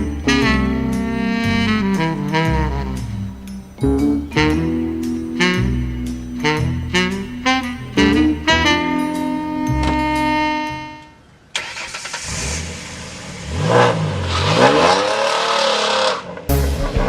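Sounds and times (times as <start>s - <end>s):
car engine revving: 0.0s - 10.9s, 11.6s - 17.0s
held musical chord: 0.0s - 11.2s.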